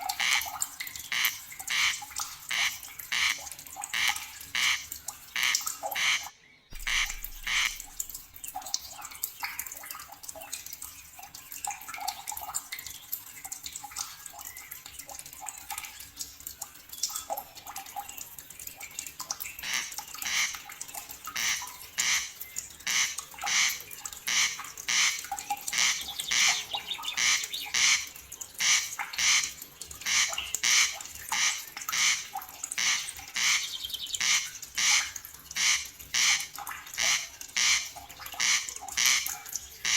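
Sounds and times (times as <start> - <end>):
wildlife calls: 5.4 - 8.1, 21.4 - 39.2.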